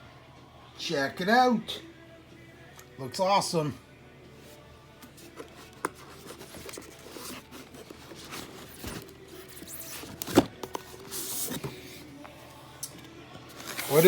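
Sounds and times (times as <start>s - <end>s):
box and packing material rustling: 5.1s - 12.3s, 13.4s - 14.0s.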